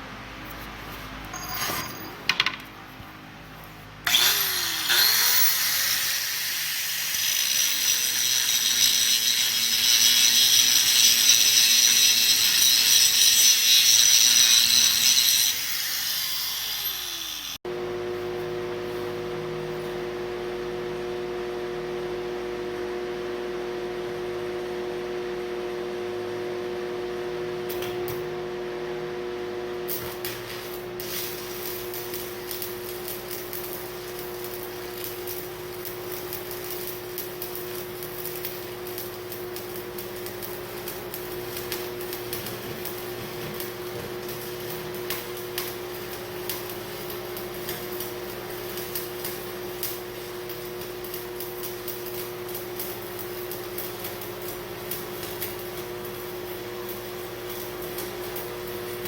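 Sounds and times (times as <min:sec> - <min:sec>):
welding arc crackling: 0:04.1 - 0:17.6, 0:29.9 - 0:59.0.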